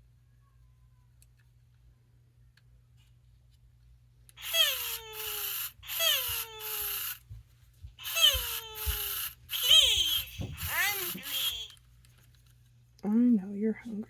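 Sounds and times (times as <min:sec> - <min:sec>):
toy chirpy electronic calls: 0:04.4 - 0:07.2, 0:08.0 - 0:11.8.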